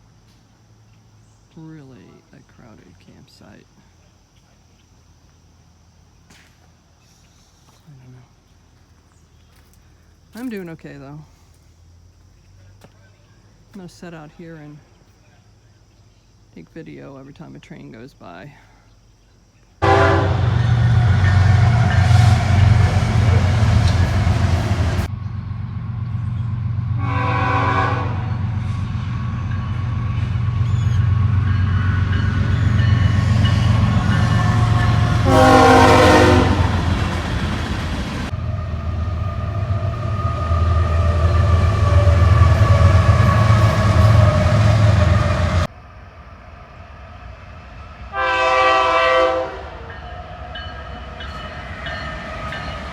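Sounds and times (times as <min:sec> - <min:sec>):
train horn blasts: 0:19.8 - 0:25.1, 0:26.9 - 0:37.4, 0:38.1 - 0:45.7, 0:48.1 - 0:52.8
train rumbling past: 0:19.8 - 0:52.9.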